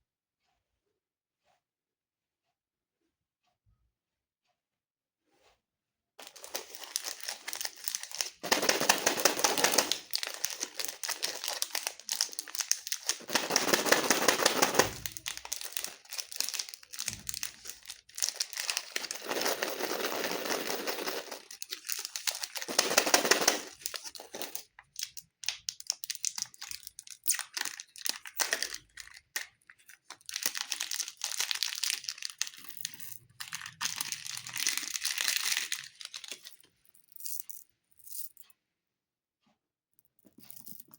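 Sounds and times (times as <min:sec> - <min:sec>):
plastic candy wrappers crinkling: 0:06.2 - 0:36.8.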